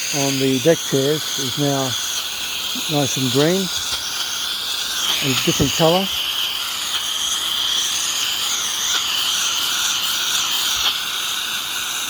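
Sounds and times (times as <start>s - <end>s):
fast pulsing trill: 0.0s - 6.9s.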